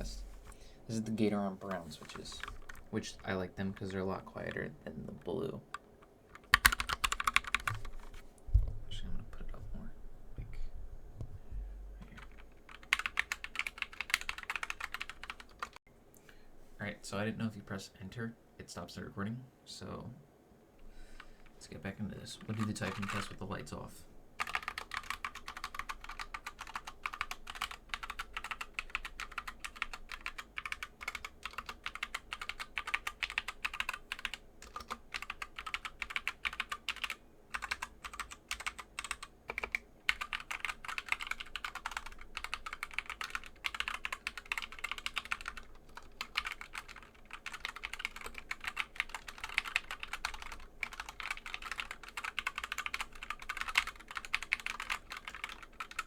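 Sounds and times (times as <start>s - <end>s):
mechanical keyboard typing: 2.0s - 4.0s, 5.2s - 8.1s, 12.2s - 15.8s, 22.3s - 23.4s, 24.4s - 56.0s.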